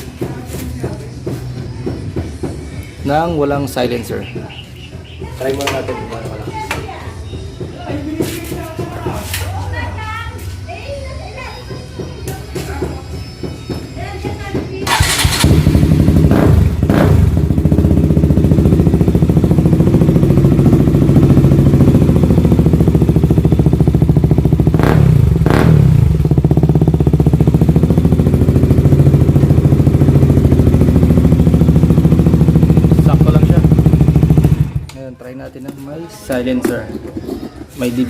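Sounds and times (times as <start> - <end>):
motorcycle engine idling: 0.0 - 9.1, 12.8 - 35.0
motorcycle throttle blips: 12.2 - 35.0.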